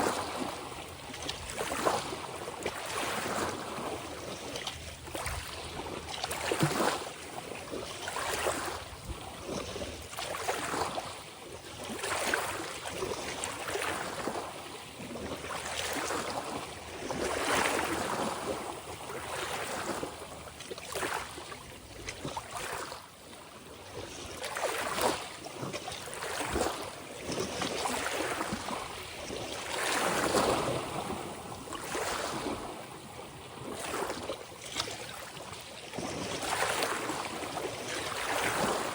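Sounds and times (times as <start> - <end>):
ocean waves splashing: 0.0 - 8.8, 26.1 - 38.9.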